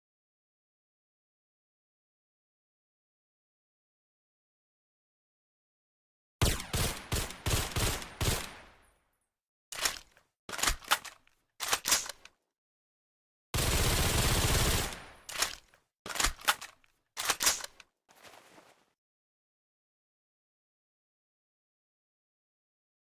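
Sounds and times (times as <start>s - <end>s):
suppressed gunshots and clacks: 6.4s - 8.8s, 9.8s - 12.3s, 14.4s - 17.8s.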